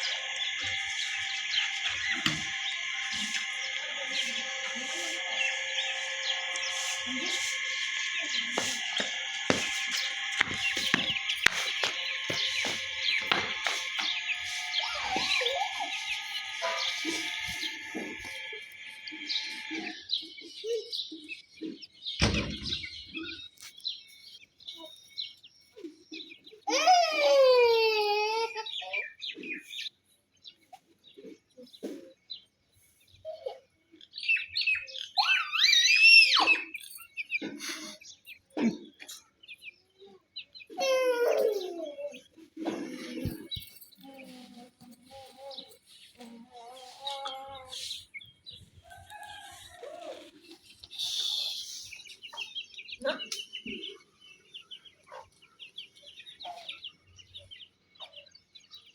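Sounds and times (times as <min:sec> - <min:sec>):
chicks peeping: 0:00.0 - 0:22.9.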